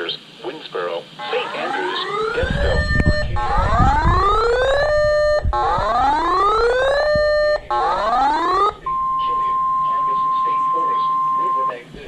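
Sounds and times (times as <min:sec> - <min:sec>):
weather radio voice: 0:00.0 - 0:03.9, 0:08.8 - 0:12.0
electronic siren rising tone: 0:01.2 - 0:11.8
low rumble: 0:02.4 - 0:10.7.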